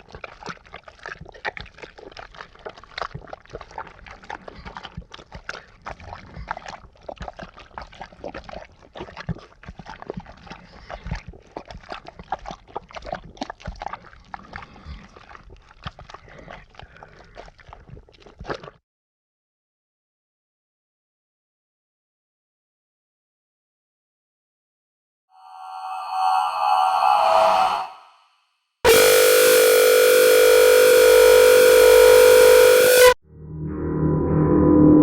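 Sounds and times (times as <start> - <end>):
dog lapping and slurping: 0.0 - 18.8.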